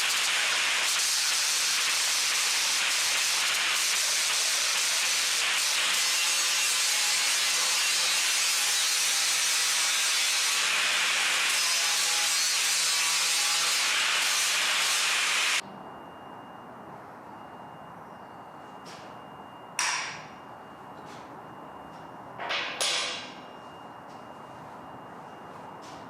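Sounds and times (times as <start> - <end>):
loud hissing metalworking tool: 0.0 - 15.6.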